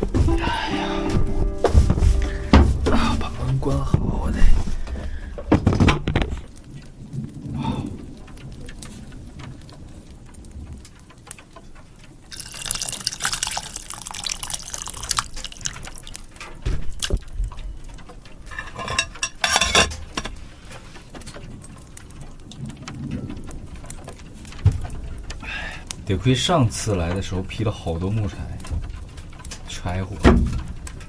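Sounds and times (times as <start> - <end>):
water pouring into container: 12.3 - 17.2.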